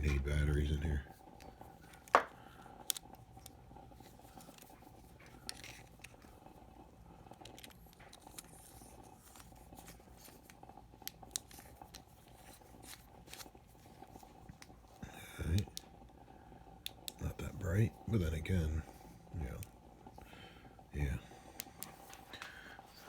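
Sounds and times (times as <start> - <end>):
faint steady hum: 0.0 - 23.0
plastic tool clicks and taps: 2.0 - 2.4.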